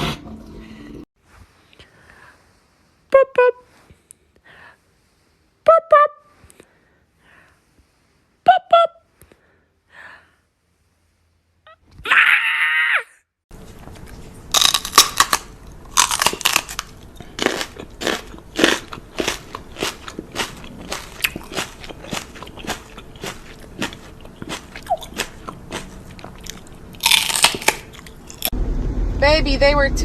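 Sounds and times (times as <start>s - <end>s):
crunchy chewing: 13.6s - 28.5s.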